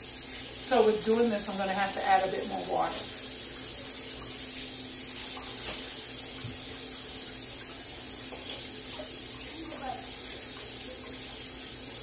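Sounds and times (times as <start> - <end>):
water running into a pot: 0.0 - 12.0.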